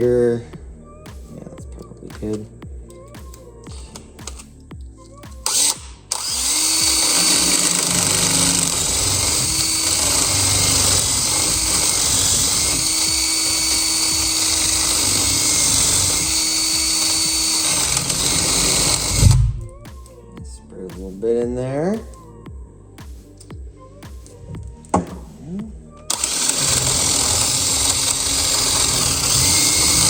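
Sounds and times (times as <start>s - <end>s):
power drill boring into lock: 5.4s - 19.5s, 26.1s - 30.0s.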